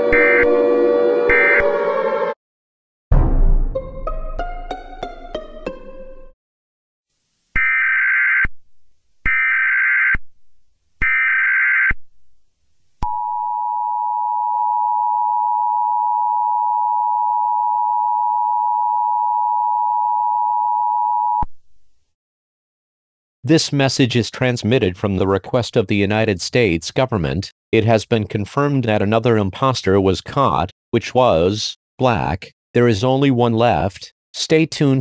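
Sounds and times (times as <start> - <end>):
music: 3.2 - 6.4.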